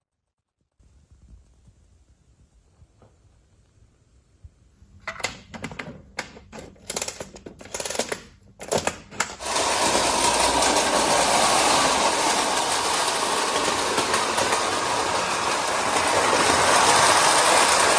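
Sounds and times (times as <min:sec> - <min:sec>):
model locomotive whirring: 0:09.4 - 0:17.9.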